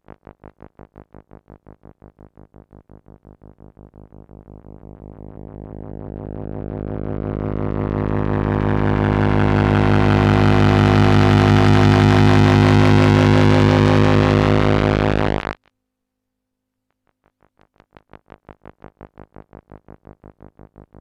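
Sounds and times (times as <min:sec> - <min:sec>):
synthesizer drone: 0:04.1 - 0:15.6
fast pulsing synth tone: 0:05.1 - 0:15.6.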